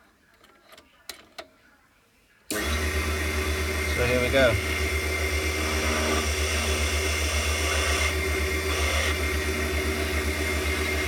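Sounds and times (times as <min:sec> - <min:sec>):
key cutting machine humming: 0:02.5 - 0:11.0.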